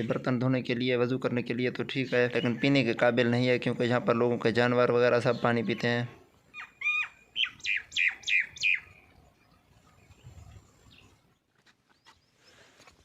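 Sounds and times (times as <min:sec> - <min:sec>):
bird calling sharp high notes: 0:06.5 - 0:09.0.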